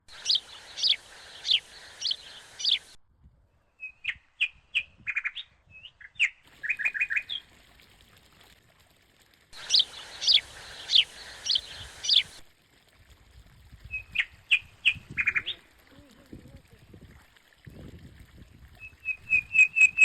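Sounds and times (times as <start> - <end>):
birds chirping: 0.1 - 3.0, 9.6 - 12.4, 13.9 - 15.8.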